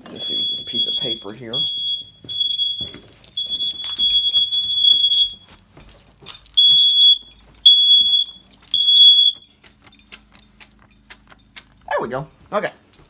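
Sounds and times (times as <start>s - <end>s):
smoke alarm beeping: 0.0s - 9.6s.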